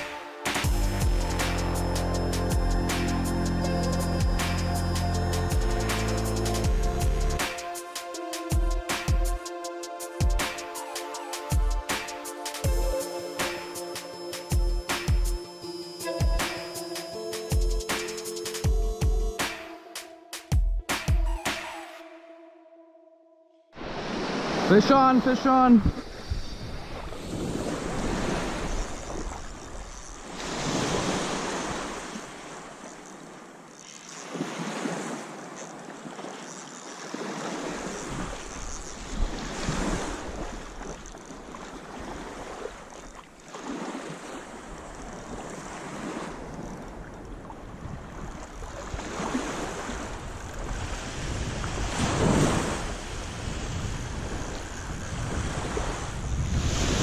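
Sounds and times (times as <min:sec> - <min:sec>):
waves washing onto beach: 0:00.0 - 0:00.9, 0:23.8 - 0:57.0
wind buffeting microphone: 0:46.4 - 0:57.0.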